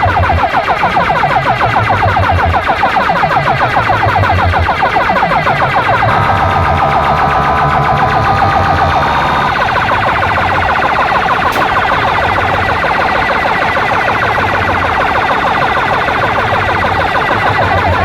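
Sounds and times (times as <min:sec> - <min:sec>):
booming bass: 0:05.8 - 0:18.0.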